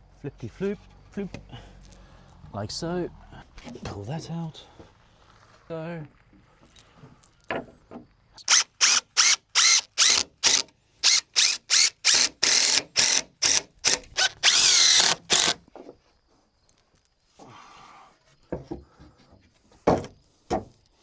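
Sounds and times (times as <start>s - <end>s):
cordless drill driving screws: 8.4s - 15.6s.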